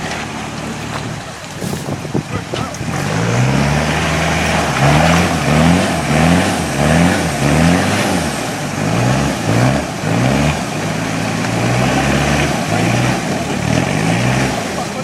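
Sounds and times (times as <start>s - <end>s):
engine revving under load: 0.0s - 15.0s
steady rush of noise: 0.0s - 15.0s.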